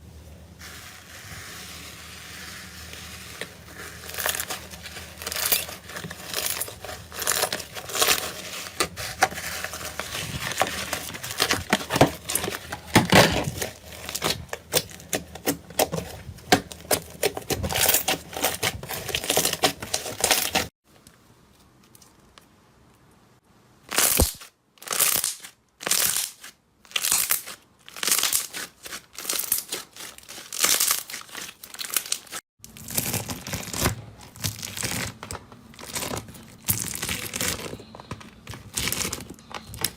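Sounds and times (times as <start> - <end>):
crackly slime squishes: 1.7 - 20.7, 23.9 - 39.9
slime crackling and popping: 24.0 - 35.2.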